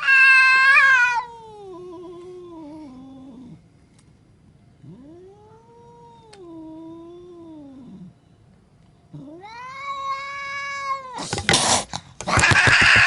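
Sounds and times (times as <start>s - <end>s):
cat yowling: 0.0s - 3.6s, 4.8s - 8.1s, 9.1s - 11.4s, 12.3s - 13.0s
cat hissing: 9.2s - 13.0s.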